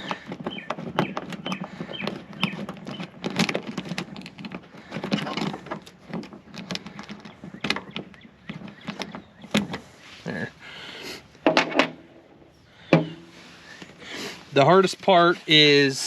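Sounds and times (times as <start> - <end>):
hardware and plastic clicking: 0.0 - 9.9.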